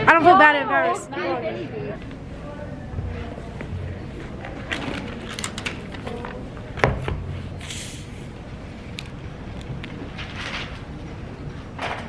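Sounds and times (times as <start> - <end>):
short hisses: 7.6 - 8.3.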